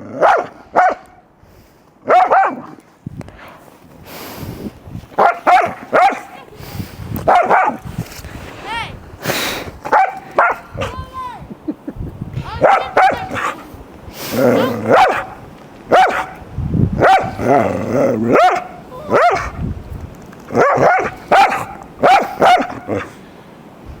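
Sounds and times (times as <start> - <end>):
dog barking: 0.2 - 1.0, 2.1 - 2.8, 5.2 - 6.5, 7.2 - 7.8, 9.9 - 11.0, 12.6 - 13.7, 14.4 - 16.4, 17.0 - 17.4, 18.3 - 19.6, 20.6 - 23.1.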